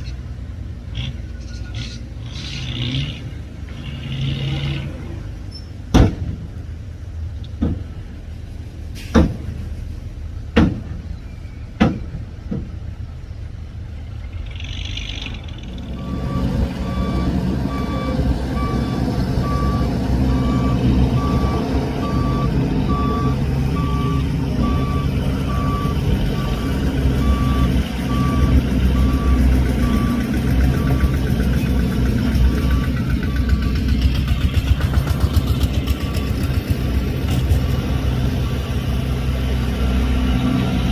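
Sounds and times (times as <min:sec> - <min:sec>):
heavy machine engine rumbling: 0:00.0 - 0:40.9
sharp knocks: 0:10.5 - 0:11.0
reversing alarm beeping: 0:15.9 - 0:31.3, 0:32.4 - 0:36.7.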